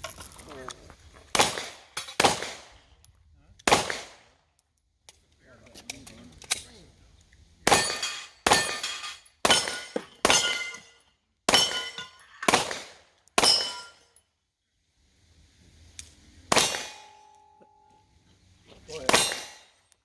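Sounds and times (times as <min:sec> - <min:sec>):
pistol shots: 0:01.3 - 0:02.8, 0:03.6 - 0:04.3, 0:07.7 - 0:10.8, 0:11.5 - 0:13.9, 0:16.5 - 0:17.2, 0:19.1 - 0:19.8
steel targets ringing: 0:07.7 - 0:12.8, 0:13.4 - 0:14.2, 0:16.5 - 0:18.0, 0:19.1 - 0:19.8.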